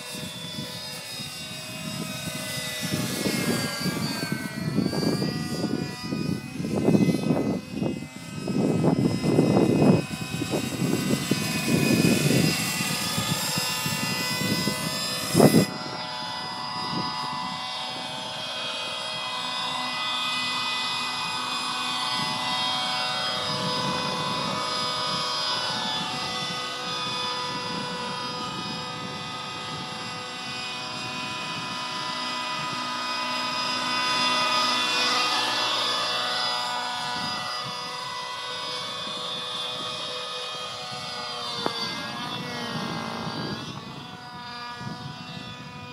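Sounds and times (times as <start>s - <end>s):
model helicopter engine running: 0.0s - 45.9s
gusty low rumble: 40.9s - 45.9s.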